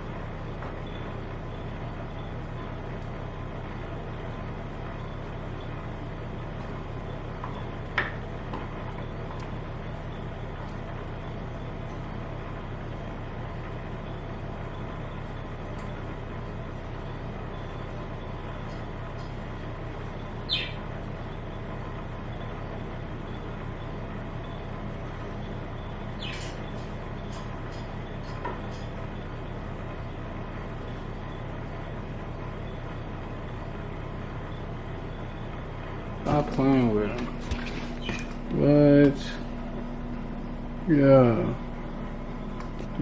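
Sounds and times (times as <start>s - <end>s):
low mechanical hum: 0.0s - 43.0s
high chirps: 20.4s - 20.9s.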